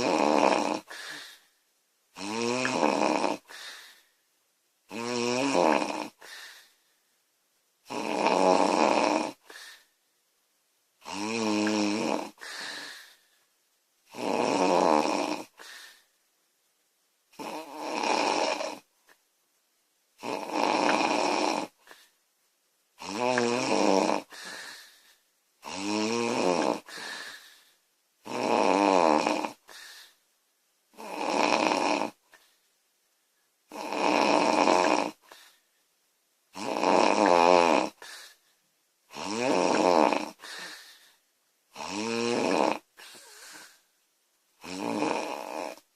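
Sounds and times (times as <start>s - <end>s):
woman snoring loudly: 0.0s - 1.2s, 2.2s - 3.7s, 4.9s - 6.4s, 7.9s - 9.6s, 11.0s - 13.1s, 14.1s - 15.7s, 17.4s - 18.9s, 20.2s - 21.8s, 23.0s - 24.9s, 25.6s - 27.4s, 28.2s - 29.7s, 30.9s - 32.2s, 33.7s - 35.2s, 36.5s - 38.2s, 39.1s - 40.8s, 41.7s - 43.7s, 44.6s - 45.9s.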